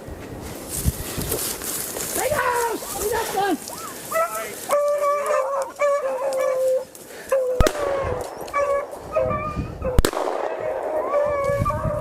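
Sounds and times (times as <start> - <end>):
hounds baying: 2.2 - 10.0, 10.6 - 12.0
sharp crack: 7.6 - 9.2, 9.9 - 11.1.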